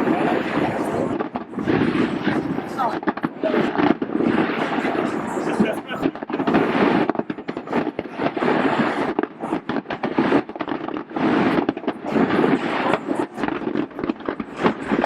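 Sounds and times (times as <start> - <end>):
fireworks pops and crackles: 0.0 - 15.0
rumble of firework bursts: 0.0 - 15.0.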